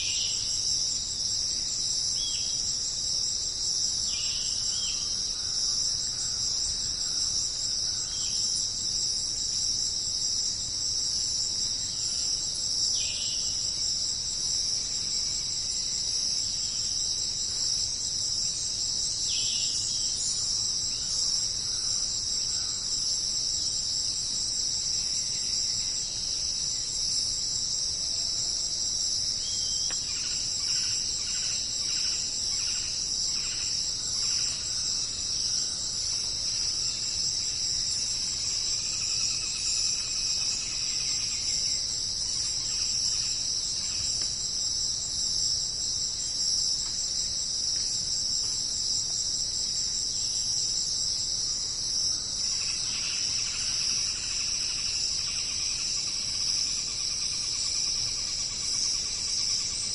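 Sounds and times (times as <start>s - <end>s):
insect chorus trilling: 0.0s - 59.9s.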